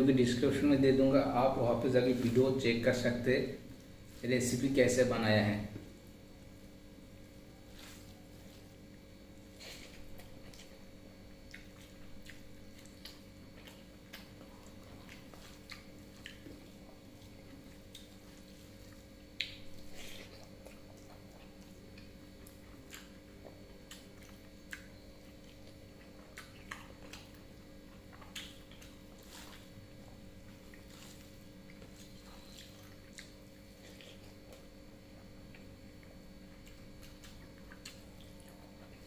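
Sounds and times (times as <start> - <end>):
wet mouth smacks and chewing: 9.7 - 10.8, 11.4 - 29.7, 30.5 - 34.8, 35.5 - 39.0.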